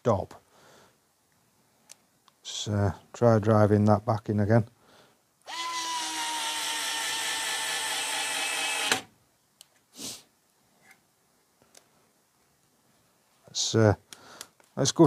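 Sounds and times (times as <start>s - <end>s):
cordless screwdriver motor running: 5.5s - 9.1s
soft rustle: 9.7s - 13.6s.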